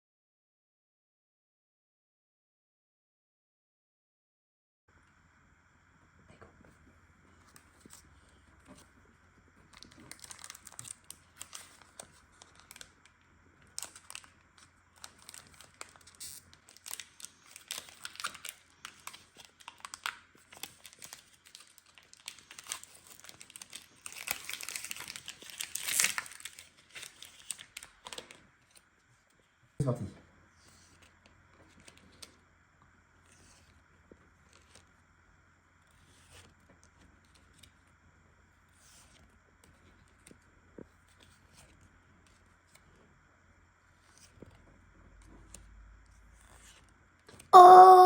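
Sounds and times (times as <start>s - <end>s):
plastic shrink-wrap crinkling and tearing: 9.8s - 13.0s, 13.6s - 28.4s.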